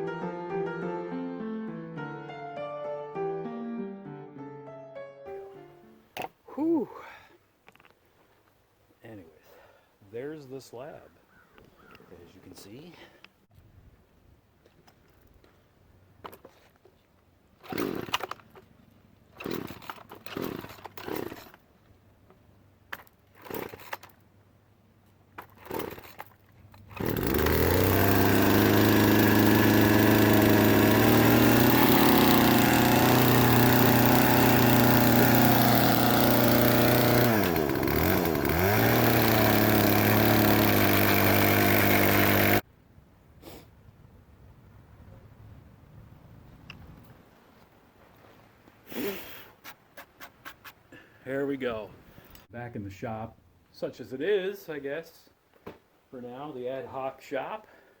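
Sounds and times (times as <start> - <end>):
chainsaw running: 17.6 - 18.6, 19.3 - 21.6, 22.9 - 24.2, 25.4 - 42.6.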